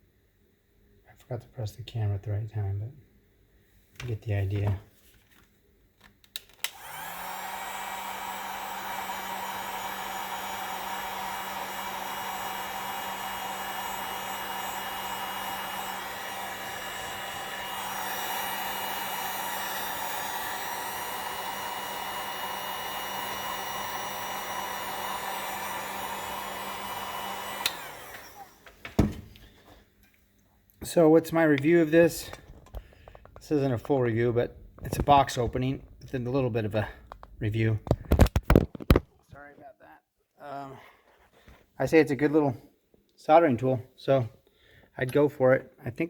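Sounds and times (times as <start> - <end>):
electric blower motor running: 6.6 - 29.2.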